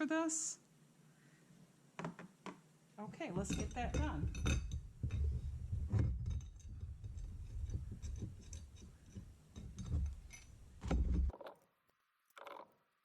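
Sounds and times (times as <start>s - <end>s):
metal hardware clicks and scrapes: 3.4s - 11.4s.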